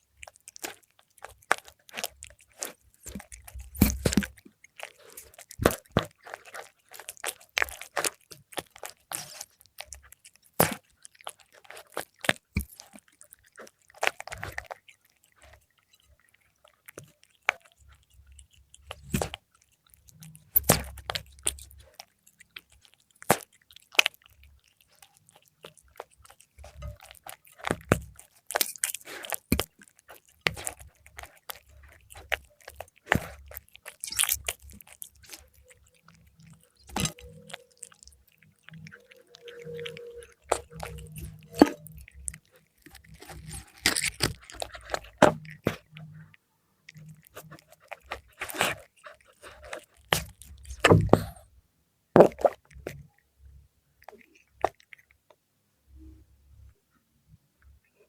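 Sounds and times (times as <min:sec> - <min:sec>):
cat chewing and crunching: 0:00.0 - 0:51.5, 0:52.2 - 0:55.4.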